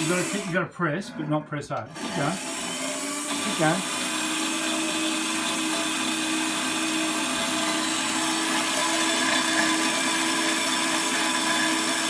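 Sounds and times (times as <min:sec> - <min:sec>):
bandsaw motor hum: 0:00.0 - 0:00.6, 0:01.8 - 0:12.0.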